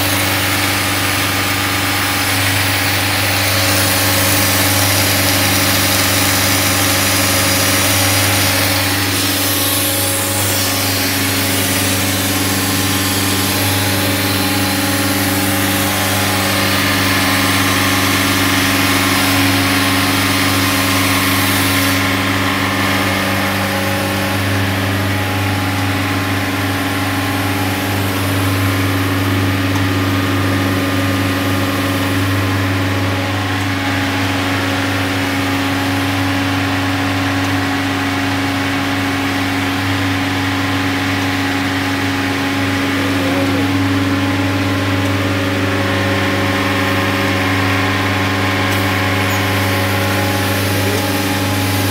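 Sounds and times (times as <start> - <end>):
compressor humming: 0.0 - 51.9
high air hiss: 2.0 - 17.2.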